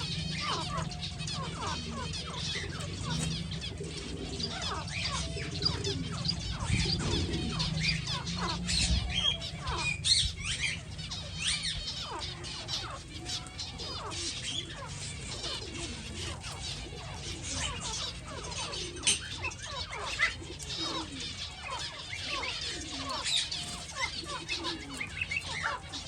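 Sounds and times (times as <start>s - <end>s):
finches chirping and calling: 0.0s - 26.0s.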